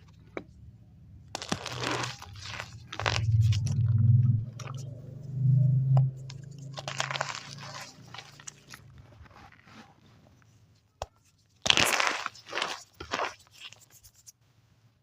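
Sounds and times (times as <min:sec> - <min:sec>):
chalk crushing crunch: 0:01.3 - 0:03.8, 0:06.2 - 0:14.3.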